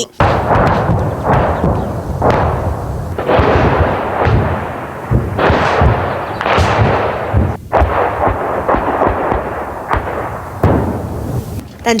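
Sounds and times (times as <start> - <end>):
artillery shell blasts: 0.0 - 12.0.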